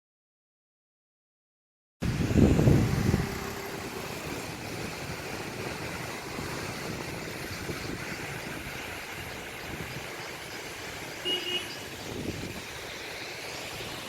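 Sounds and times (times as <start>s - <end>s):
waterfall rushing: 2.0s - 14.0s
loud low rumble: 2.1s - 5.8s.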